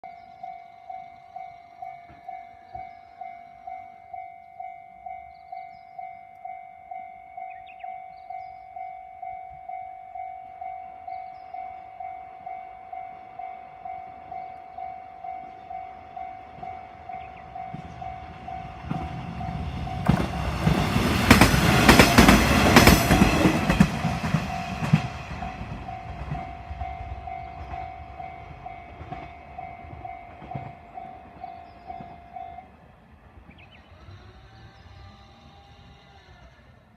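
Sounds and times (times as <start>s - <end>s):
level crossing bell ringing: 0.0s - 20.0s
diesel train passing: 0.0s - 36.0s
train wheels clacking on rail joints: 15.4s - 32.7s.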